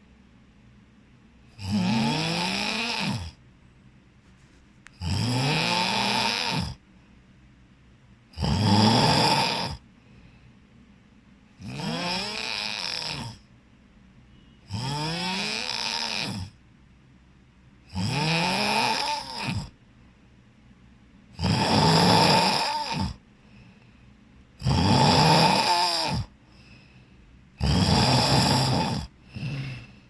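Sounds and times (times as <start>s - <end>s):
person snoring heavily: 1.5s - 3.4s, 5.0s - 6.8s, 8.3s - 9.8s, 11.6s - 13.4s, 14.7s - 16.6s, 17.9s - 19.8s, 21.4s - 23.2s, 24.6s - 26.8s, 27.6s - 30.0s.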